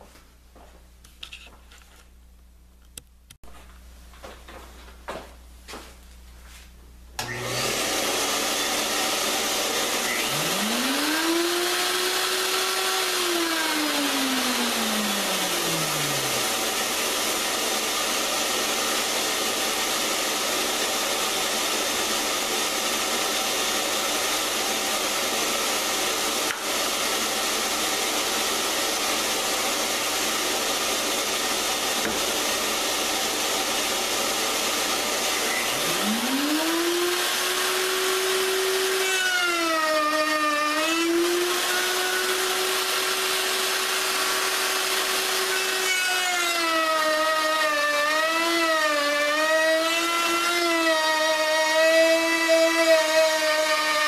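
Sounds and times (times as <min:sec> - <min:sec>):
shop vacuum running: 0:03.6 - 0:54.0
router spinning: 0:07.2 - 0:54.0.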